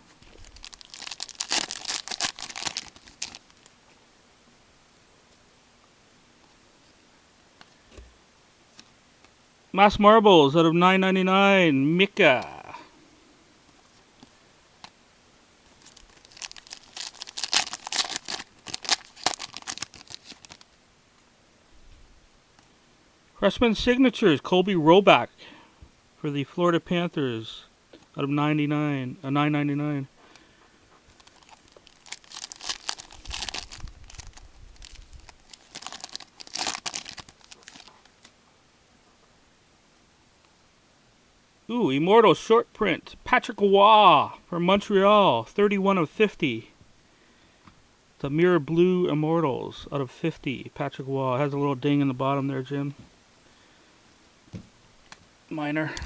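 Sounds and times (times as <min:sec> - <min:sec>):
card pack wrapper tearing: 0:00.2 - 0:03.7, 0:15.8 - 0:20.7, 0:31.2 - 0:38.1.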